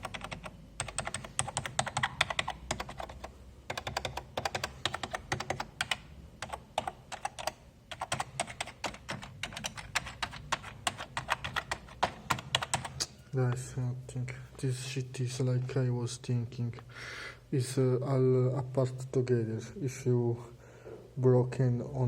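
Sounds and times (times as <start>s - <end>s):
keyboard keys clicking: 0.0s - 13.1s.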